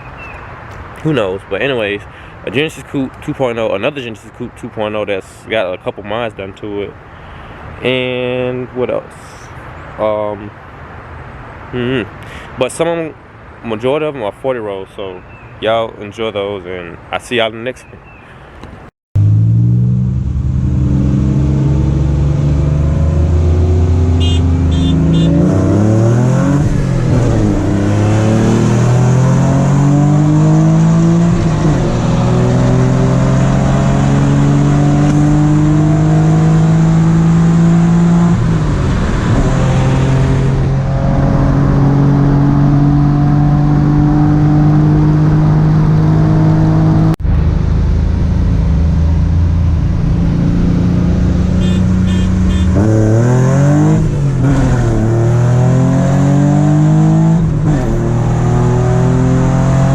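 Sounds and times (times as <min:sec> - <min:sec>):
car engine under full throttle: 0:19.2 - 0:59.9.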